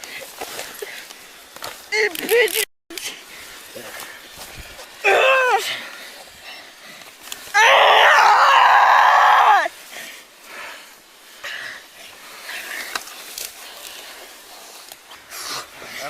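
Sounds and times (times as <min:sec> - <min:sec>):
woman screaming: 0:05.0 - 0:05.7, 0:07.6 - 0:09.7.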